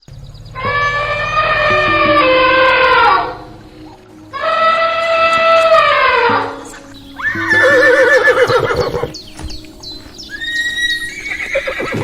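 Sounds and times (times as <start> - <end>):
high chirps: 0.0 - 12.0
horse neighing: 0.6 - 3.6, 4.4 - 9.2, 10.4 - 12.0.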